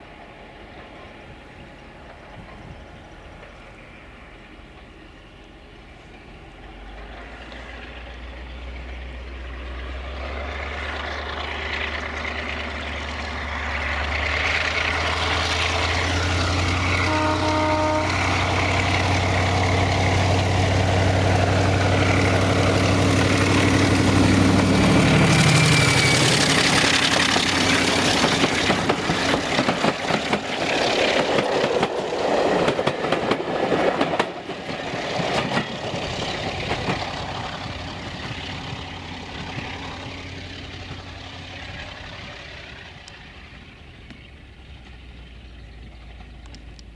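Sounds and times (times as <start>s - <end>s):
diesel locomotive engine: 0.0s - 46.9s
train coaches rattling over rail joints: 0.0s - 46.9s
train horn: 16.2s - 19.0s.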